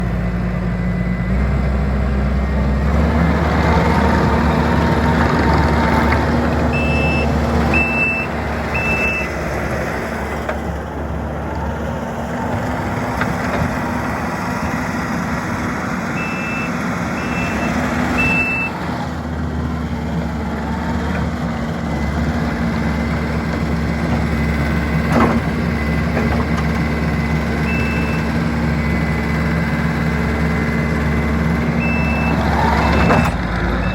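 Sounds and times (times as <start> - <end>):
diesel engine running: 0.0 - 33.9
reverse alarm beeps: 6.7 - 9.4, 16.2 - 18.8, 27.7 - 28.4, 31.8 - 33.9.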